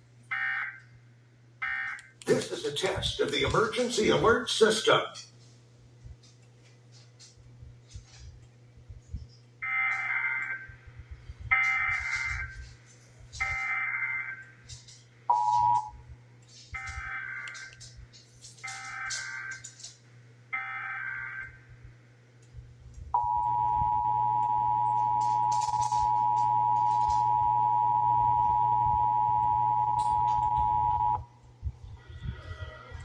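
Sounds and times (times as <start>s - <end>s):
harsh buzzing data tone: 9.6s - 10.9s, 13.4s - 14.7s, 15.3s - 16.0s, 16.8s - 17.9s, 20.5s - 21.7s, 23.2s - 31.3s.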